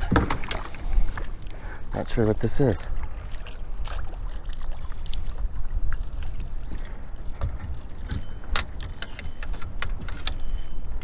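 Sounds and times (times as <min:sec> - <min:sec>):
clicks and knocks from gear: 0:07.4 - 0:10.7.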